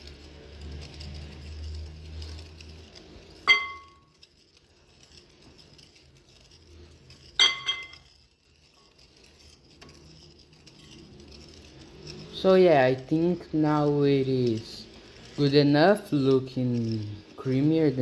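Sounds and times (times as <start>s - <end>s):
faint stirring of dough: 0.0s - 18.0s
spoon clinking against mixing bowl: 3.5s - 4.0s, 7.4s - 8.1s.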